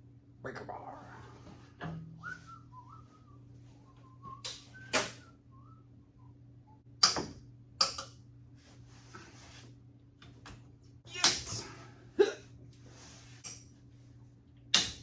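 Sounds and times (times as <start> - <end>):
steady low hum: 0.0 - 15.0
man whistling: 2.2 - 6.8.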